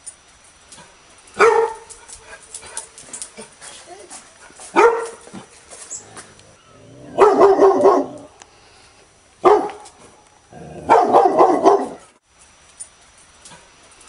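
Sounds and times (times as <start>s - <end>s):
dog barking aggressively: 1.4s - 3.5s, 4.7s - 5.5s, 7.1s - 8.3s, 9.4s - 10.0s, 10.6s - 12.1s.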